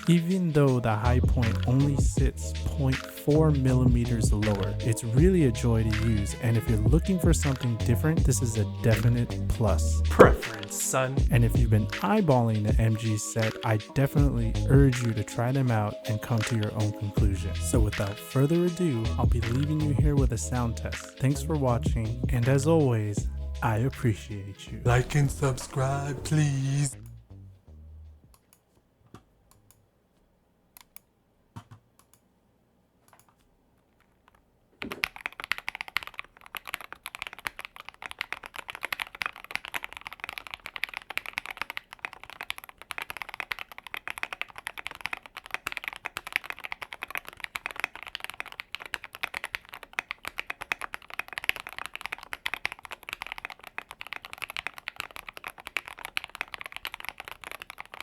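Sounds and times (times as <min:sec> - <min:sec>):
mechanical keyboard typing: 0:00.0 - 0:05.2, 0:05.8 - 0:14.2, 0:14.8 - 0:23.0, 0:34.0 - 0:58.0.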